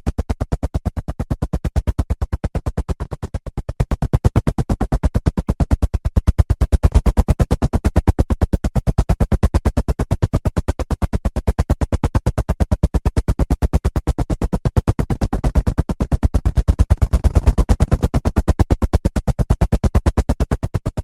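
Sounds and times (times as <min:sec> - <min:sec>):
helicopter rotor blades chopping: 0:04.0 - 0:08.6, 0:15.1 - 0:19.5.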